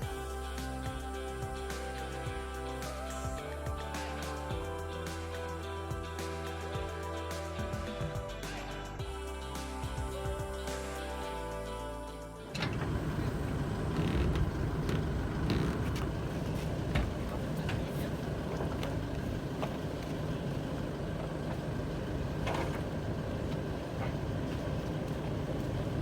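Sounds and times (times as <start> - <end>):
vehicle engine hum: 12.5 - 26.0.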